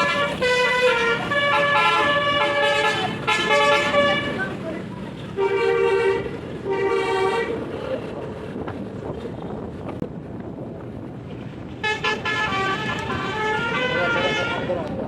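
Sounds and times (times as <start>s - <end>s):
multi-tone bus horn: 0.0s - 7.9s, 11.8s - 15.0s
vehicle and wind noise: 0.0s - 15.0s.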